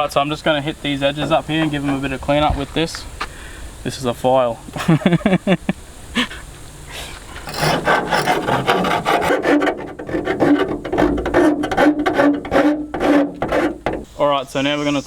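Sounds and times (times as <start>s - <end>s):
hand file scraping sheet metal: 7.4s - 14.1s.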